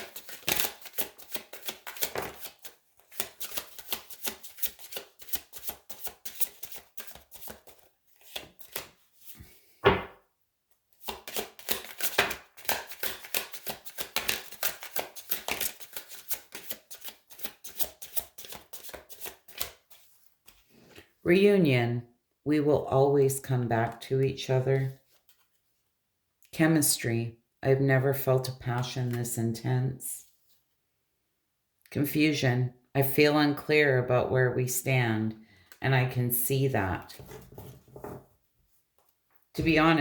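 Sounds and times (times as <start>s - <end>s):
cards being shuffled: 0.0s - 9.4s, 11.0s - 21.0s
loud knock: 9.8s - 10.2s.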